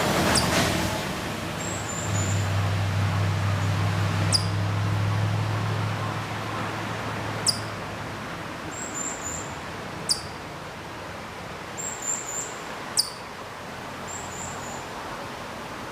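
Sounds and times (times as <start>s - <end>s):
chipmunk chirping: 0.3s - 0.5s, 4.3s - 4.6s, 7.4s - 7.8s, 8.8s - 10.4s, 11.8s - 13.2s
fainter higher chirps: 4.3s - 4.5s.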